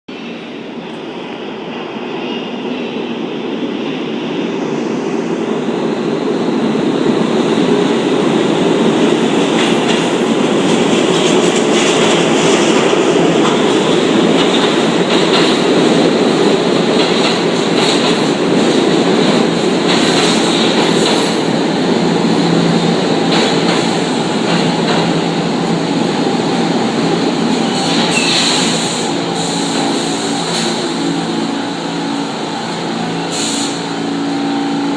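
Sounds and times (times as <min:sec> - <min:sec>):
train wheels rumbling on rails: 0:00.1 - 0:34.9
wheels clacking over rail joints: 0:09.0 - 0:21.4, 0:22.5 - 0:31.3
high brake squeal: 0:27.7 - 0:30.8.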